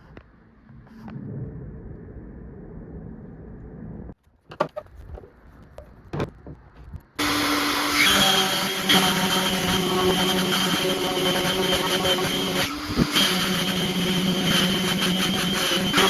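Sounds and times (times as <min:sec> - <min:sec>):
muffled low rumble: 0:00.0 - 0:04.2
power tool motor whining: 0:07.2 - 0:16.0.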